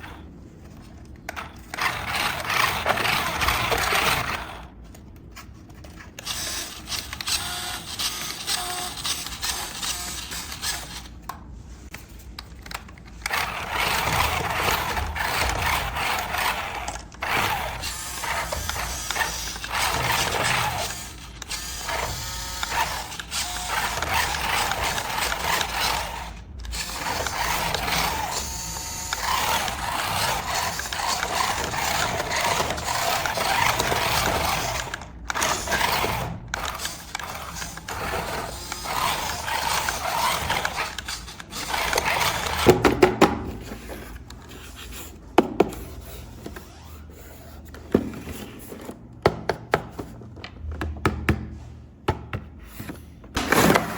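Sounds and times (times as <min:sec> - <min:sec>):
toy plastic gears whirring: 0:01.3 - 0:05.0, 0:05.8 - 0:42.8.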